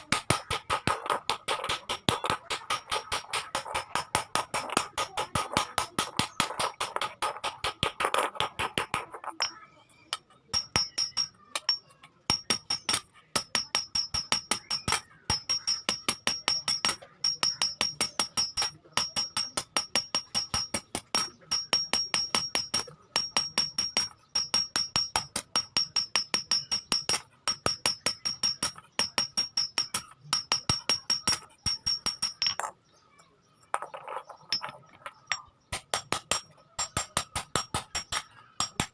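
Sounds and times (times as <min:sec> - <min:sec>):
hammer striking iron on anvil: 0:10.5 - 0:32.7, 0:35.3 - 0:38.9.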